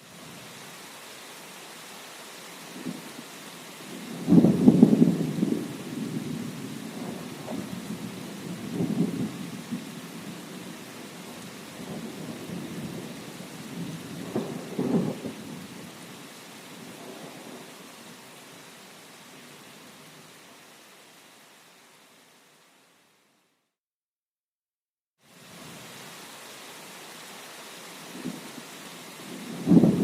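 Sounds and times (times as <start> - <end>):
steady rain: 0.0 - 23.7, 25.2 - 30.0
thunder rumbling: 4.0 - 15.8, 29.3 - 30.0.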